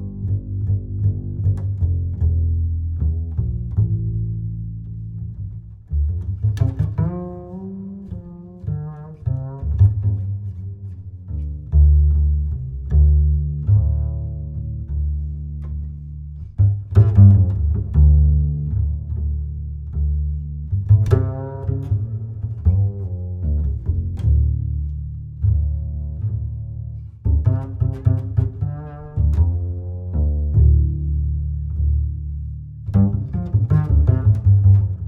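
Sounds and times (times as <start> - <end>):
music with deep bass line: 0.0 - 35.0.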